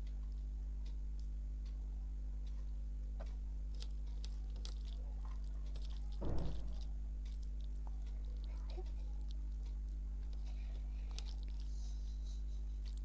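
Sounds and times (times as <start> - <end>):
low electrical hum: 0.0 - 13.0
thump: 6.2 - 6.9
person chewing: 6.8 - 12.2.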